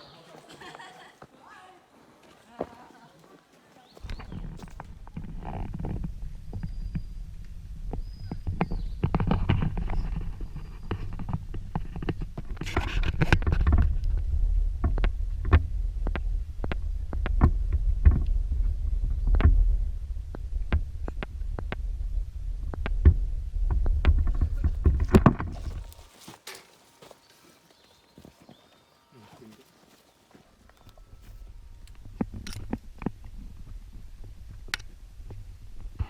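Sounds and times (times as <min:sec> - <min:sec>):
wind rumbling on microphone: 0:04.0 - 0:26.1, 0:31.0 - 0:36.0.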